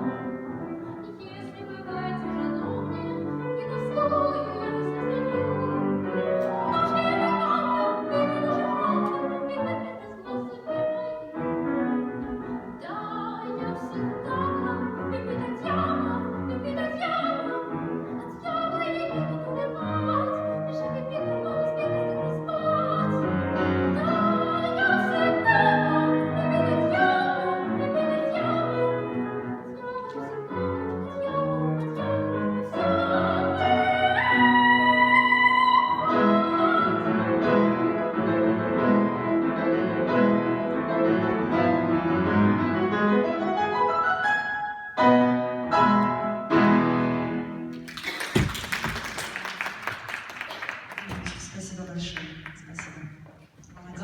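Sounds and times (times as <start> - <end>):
piano accompaniment: 0.0 - 51.5
girl singing operetta: 0.8 - 5.9, 6.6 - 11.3, 12.2 - 23.2, 24.0 - 37.2.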